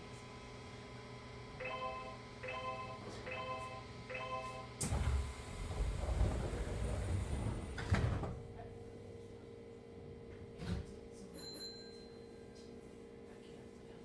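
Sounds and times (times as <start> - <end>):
train sliding doors running: 4.8 - 8.4.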